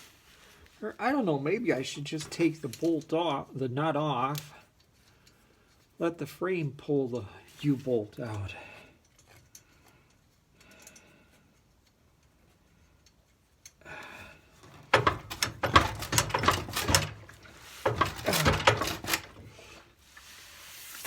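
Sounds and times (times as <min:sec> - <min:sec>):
metal tools clanking and rattling: 0:14.6 - 0:19.8.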